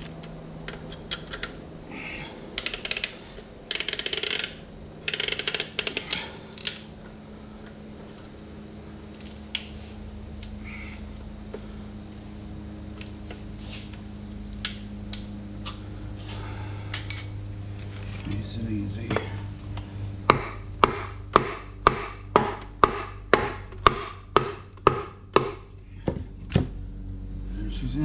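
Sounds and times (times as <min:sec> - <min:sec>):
metal clicking and rattling: 0:02.6 - 0:06.9.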